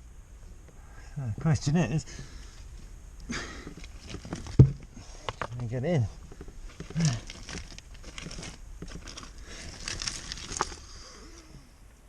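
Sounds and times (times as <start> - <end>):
rustling and scraping on rock: 2.4 - 11.6.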